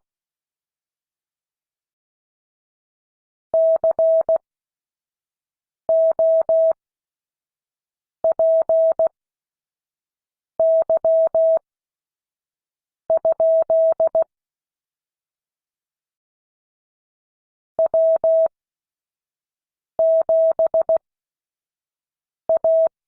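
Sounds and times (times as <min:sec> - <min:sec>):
morse code beeps: 0:10.6 - 0:11.6, 0:22.6 - 0:22.9.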